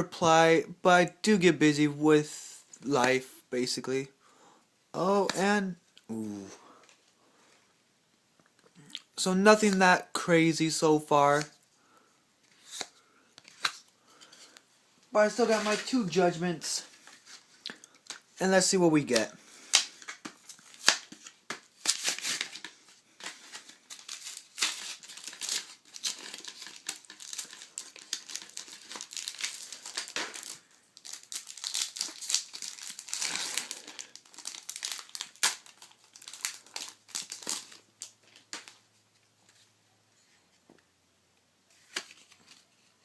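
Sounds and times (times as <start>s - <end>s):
foil wrapper crinkling and tearing: 19.7s - 38.8s.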